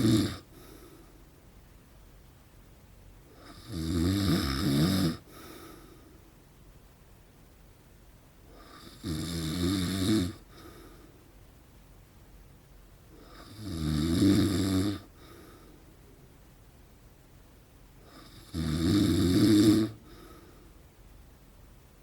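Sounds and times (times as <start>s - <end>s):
man snoring: 0.0s - 0.5s, 3.4s - 5.5s, 8.6s - 10.5s, 13.2s - 15.1s, 18.1s - 20.2s
quiet breathing: 0.0s - 1.5s, 3.2s - 3.8s, 4.4s - 6.6s, 8.4s - 9.1s, 10.1s - 11.5s, 13.0s - 13.7s, 14.5s - 16.5s, 17.9s - 21.4s.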